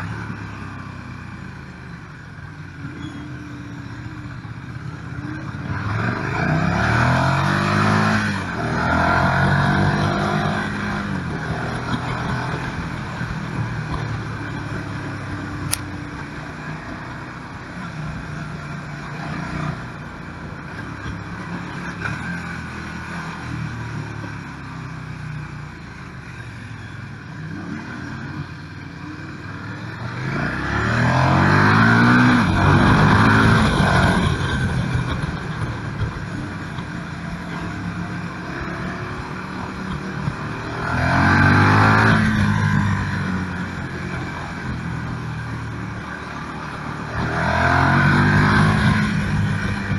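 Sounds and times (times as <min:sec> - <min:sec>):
motorcycle engine accelerating: 0:27.4 - 0:49.9.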